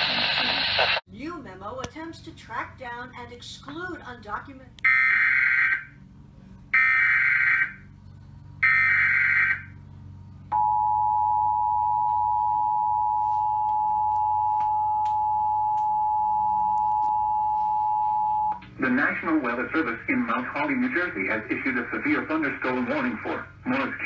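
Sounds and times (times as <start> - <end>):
steady two-tone attention signal: 10.6 - 18.6.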